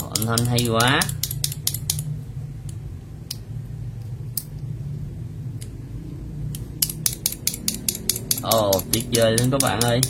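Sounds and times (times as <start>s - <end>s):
plastic keycaps clacking: 0.0s - 2.0s, 7.0s - 10.0s
low steady hum: 0.0s - 10.0s.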